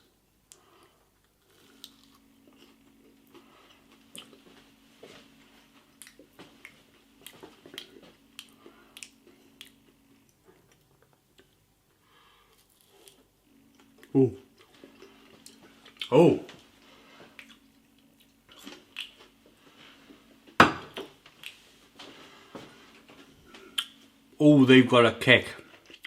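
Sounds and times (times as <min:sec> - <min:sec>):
faint steady hum: 0:00.0 - 0:26.0
person chewing and crunching: 0:00.5 - 0:04.6, 0:05.9 - 0:11.6, 0:12.4 - 0:16.3, 0:17.2 - 0:19.4, 0:23.6 - 0:24.0, 0:25.7 - 0:26.0.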